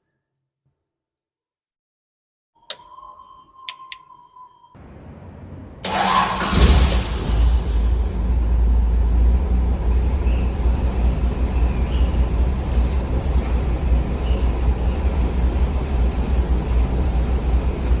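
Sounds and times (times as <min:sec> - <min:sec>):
car engine idling: 0:04.8 - 0:18.0.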